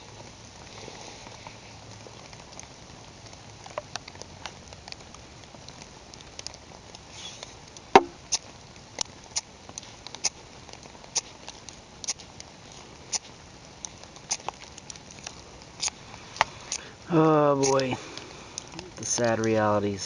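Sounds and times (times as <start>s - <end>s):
striker scraping ferrocerium rod: 17.6s - 17.9s.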